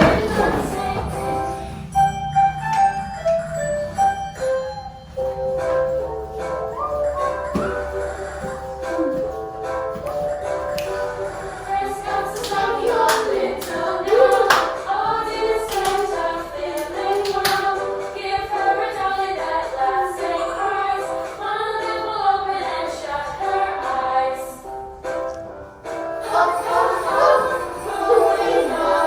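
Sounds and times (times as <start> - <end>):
young children singing: 0.0 - 1.9, 6.4 - 24.7, 26.0 - 29.0
backing music: 0.0 - 29.0
hand claps: 10.0 - 11.2, 12.2 - 14.8, 15.6 - 17.8.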